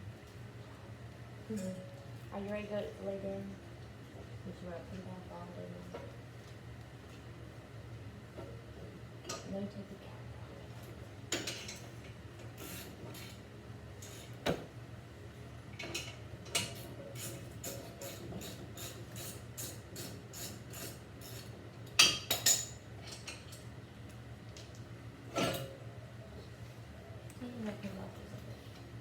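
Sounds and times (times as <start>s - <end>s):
low steady hum: 0.0s - 12.7s.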